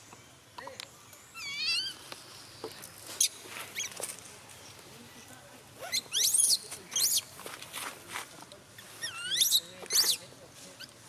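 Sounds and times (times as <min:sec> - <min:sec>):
monkey screaming: 0:01.4 - 0:02.0, 0:05.9 - 0:07.2.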